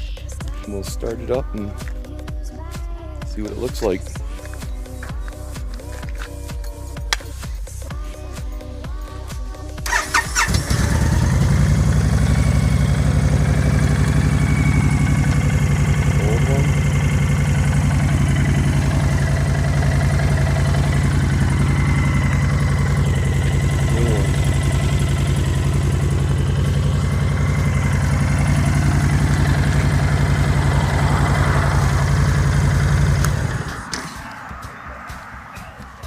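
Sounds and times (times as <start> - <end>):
motorcycle engine idling: 0.0 - 36.0.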